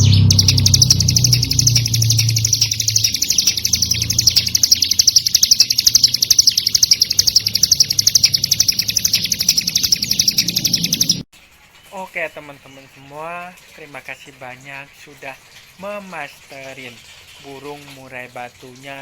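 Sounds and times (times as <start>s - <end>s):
bird singing rapid high chirps: 0.0s - 11.3s.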